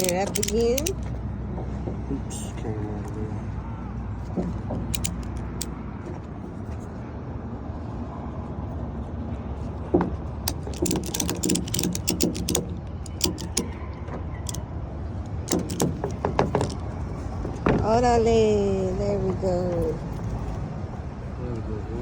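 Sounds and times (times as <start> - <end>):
ratchet strap clicking: 0.0 - 1.1, 4.8 - 5.7, 10.4 - 13.8, 14.4 - 14.6, 15.2 - 16.9.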